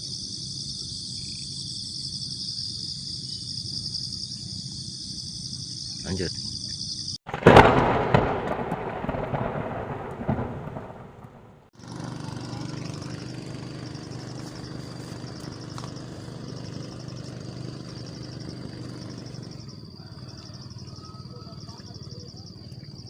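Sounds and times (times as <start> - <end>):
insects chirring: 0.0 - 23.0
loud rumbling: 7.3 - 19.7.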